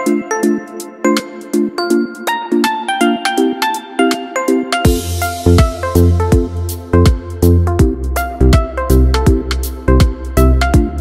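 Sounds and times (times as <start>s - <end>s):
plucked notes: 0.0s - 11.0s
quick steady beat: 4.9s - 11.0s.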